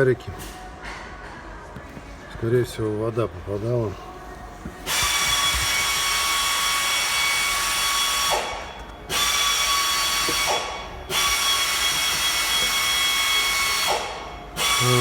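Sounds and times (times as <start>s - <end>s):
small power tool whining: 4.9s - 15.0s.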